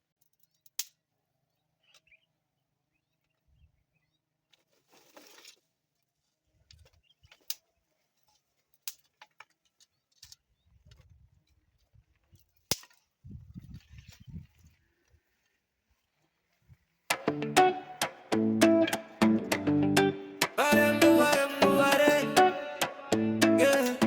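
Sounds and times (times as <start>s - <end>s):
short rustle: 4.6s - 8.8s
sharp clicks and knocks: 17.1s - 19.7s.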